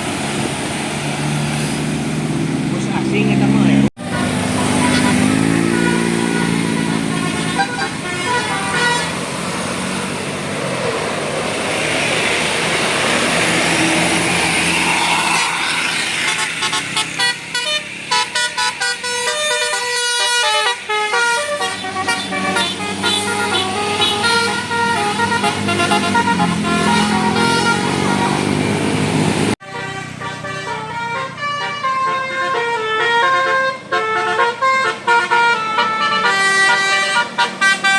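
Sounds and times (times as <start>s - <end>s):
bus engine: 0.0s - 37.9s
road noise: 0.0s - 37.9s
multi-tone bus horn melody: 3.0s - 9.4s, 15.9s - 37.9s.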